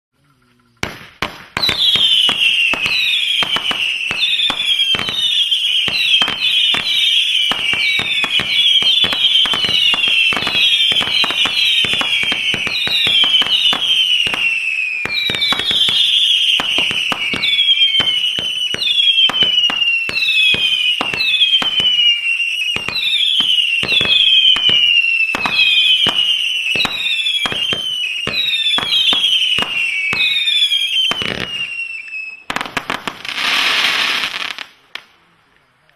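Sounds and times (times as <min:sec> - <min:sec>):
falling firework whistles: 0:00.2 - 0:35.4
firework pops: 0:00.8 - 0:05.2.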